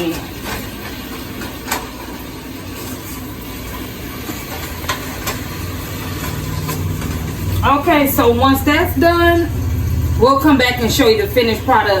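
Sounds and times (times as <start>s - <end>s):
meat sizzling in a pan: 0.4s - 8.1s.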